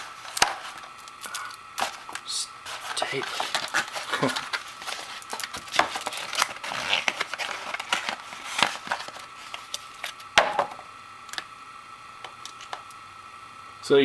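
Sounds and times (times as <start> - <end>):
packaging crinkling: 0.0 - 10.3.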